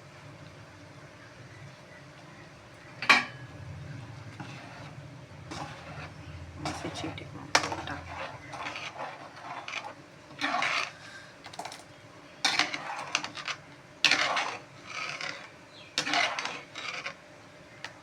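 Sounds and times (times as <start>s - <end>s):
spoon scraping a pan: 2.9s - 17.2s.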